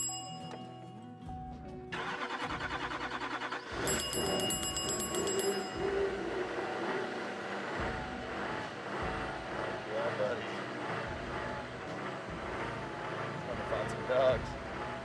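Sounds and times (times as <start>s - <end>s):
diesel engine running: 2.0s - 15.0s
starter motor cranking: 2.0s - 15.0s
high pulsing chime: 3.8s - 6.8s.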